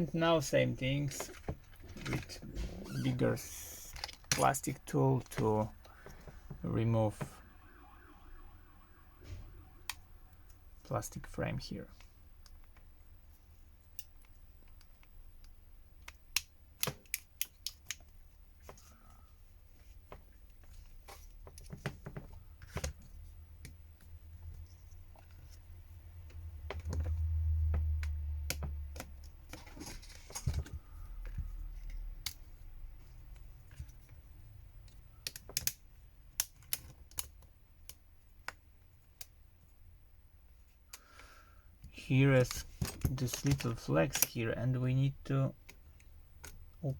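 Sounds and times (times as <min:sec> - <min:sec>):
plastic clicks and snaps: 0:13.9 - 0:18.2, 0:35.2 - 0:38.6, 0:42.4 - 0:44.4.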